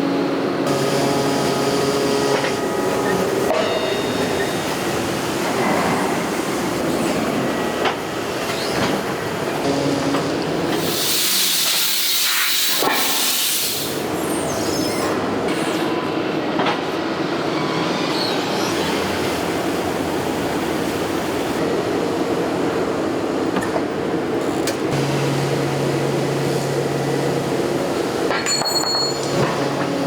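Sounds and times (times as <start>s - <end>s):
factory machinery running: 0.0s - 30.0s
loud hiss of air or steam: 10.7s - 14.1s.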